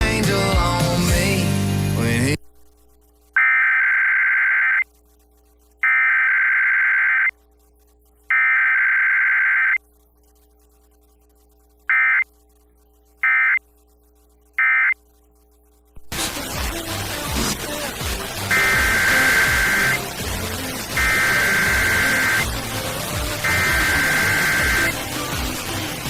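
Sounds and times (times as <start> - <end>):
loud music with noise: 0.0 - 2.4, 16.0 - 26.0
buzzing data bursts: 2.5 - 26.0.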